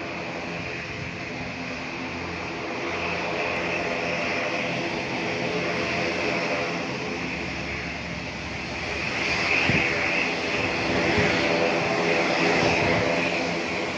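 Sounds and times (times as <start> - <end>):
jet engines roaring: 0.0 - 13.9.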